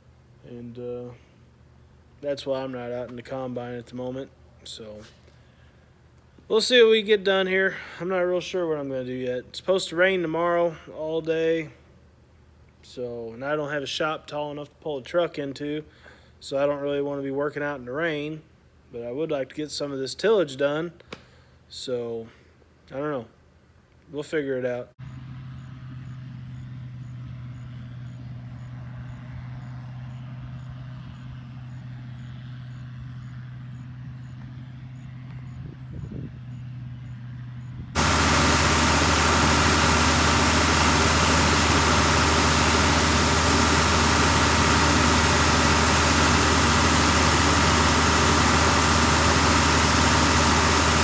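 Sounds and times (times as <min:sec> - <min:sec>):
low engine hum: 0:25.0 - 0:51.0
combine harvester running: 0:38.0 - 0:51.0.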